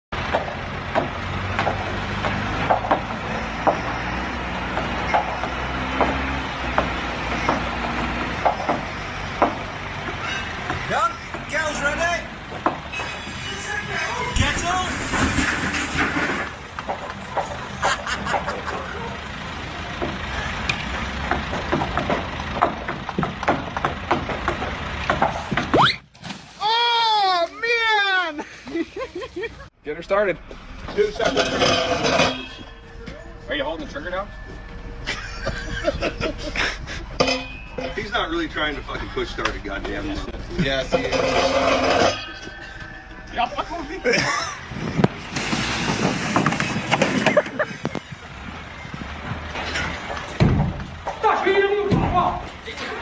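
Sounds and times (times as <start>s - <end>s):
sharp knocks and clanks: 0.2s - 11.6s, 12.4s - 13.2s, 20.0s - 25.8s, 30.4s - 32.8s, 37.0s - 43.2s, 44.2s - 52.6s
large engine running: 15.8s - 25.7s, 33.0s - 53.0s.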